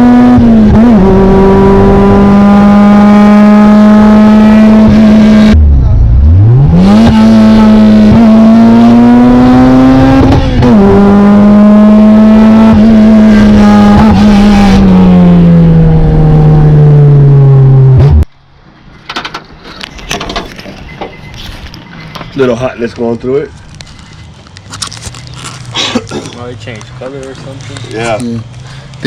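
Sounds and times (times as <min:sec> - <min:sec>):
loud car engine revving: 0:00.0 - 0:18.3.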